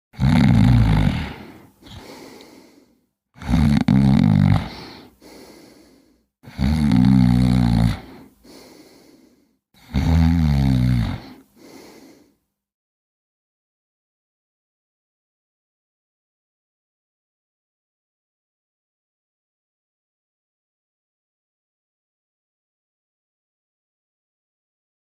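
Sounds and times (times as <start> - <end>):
cat snoring: 0.2 - 9.0, 9.8 - 12.2
cat breathing softly: 1.2 - 3.0, 4.6 - 6.3, 8.0 - 9.6, 11.3 - 12.4.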